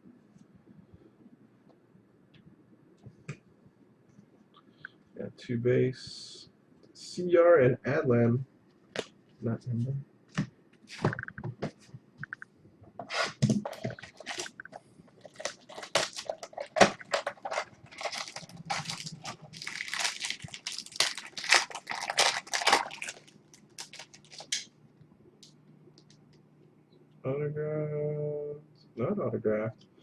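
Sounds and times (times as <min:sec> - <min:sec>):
wrappers crinkling and tearing: 0:13.7 - 0:14.6, 0:15.2 - 0:24.7.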